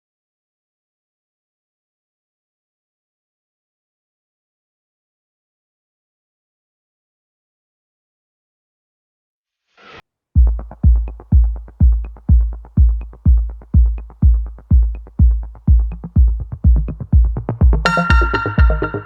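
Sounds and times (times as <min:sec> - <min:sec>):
heavy kick drum: 0:10.4 - 0:19.0
bright synth chord: 0:17.8 - 0:19.0.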